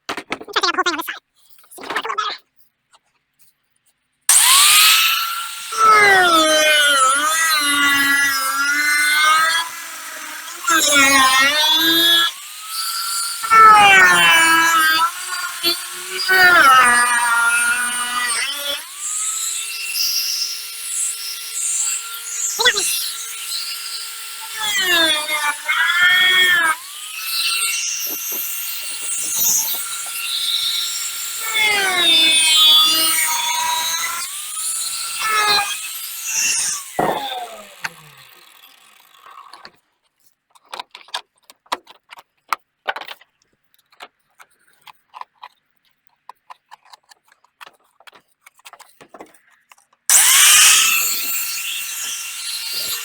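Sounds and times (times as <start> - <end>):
power tool whining while cutting: 4.3 - 39.8, 50.1 - 53.0
light clicks and scrapes: 39.6 - 50.1.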